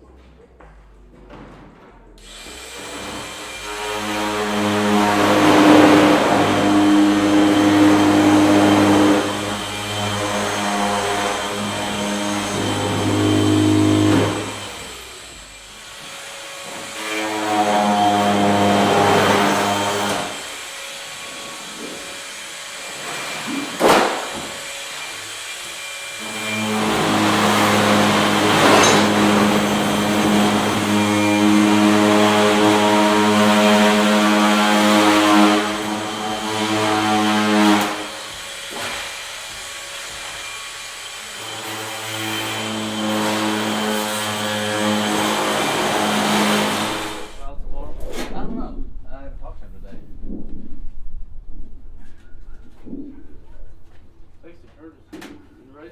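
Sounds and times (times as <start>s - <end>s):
pressure washer motor humming: 2.2s - 16.6s, 17.7s - 38.5s.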